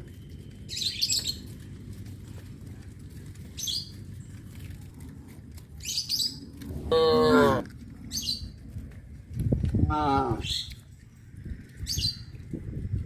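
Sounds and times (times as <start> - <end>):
small birds chirping: 0.2 - 1.7, 3.2 - 4.9, 5.7 - 6.6, 8.0 - 8.7, 10.3 - 12.6
cow mooing: 6.9 - 7.7.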